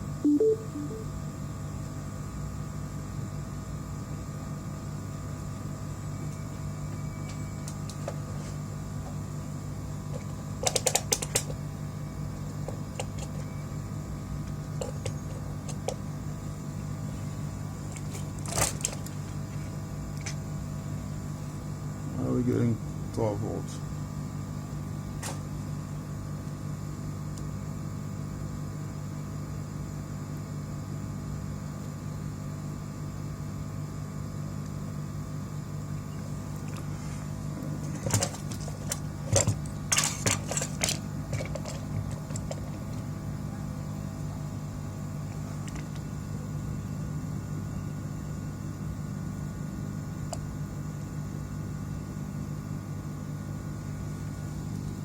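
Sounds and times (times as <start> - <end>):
low electrical hum: 0.0 - 55.0.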